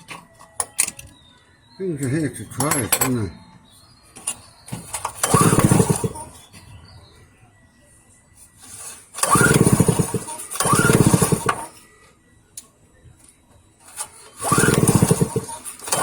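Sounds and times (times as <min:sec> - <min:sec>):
generator recoil starter pulls: 0:04.2 - 0:06.5, 0:08.6 - 0:11.8, 0:13.8 - 0:16.0.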